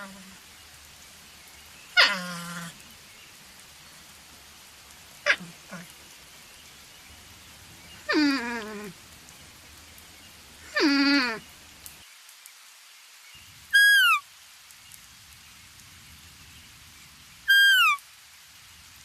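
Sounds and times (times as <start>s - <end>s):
animal calling: 0.0s - 0.4s, 1.9s - 2.9s, 5.2s - 6.0s, 8.0s - 9.0s, 10.6s - 11.5s, 13.8s - 14.2s, 17.5s - 18.0s.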